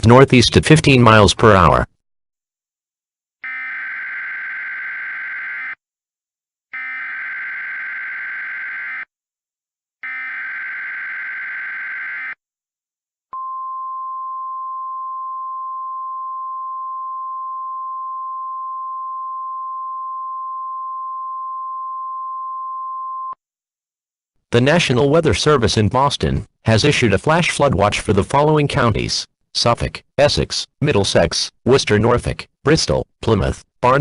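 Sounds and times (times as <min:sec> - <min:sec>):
steady warning alarm tone: 0:03.4 - 0:05.8, 0:06.8 - 0:09.1, 0:10.0 - 0:12.4.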